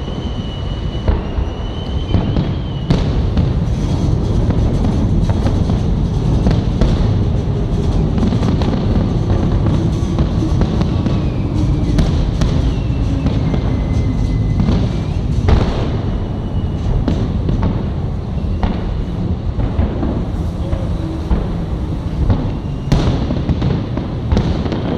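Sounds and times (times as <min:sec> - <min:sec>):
whistling tones gliding downward: 0:00.0 - 0:03.1, 0:09.7 - 0:17.6, 0:20.6 - 0:23.3
fireworks booms and bangs: 0:00.0 - 0:24.9
low rumble: 0:03.2 - 0:24.4.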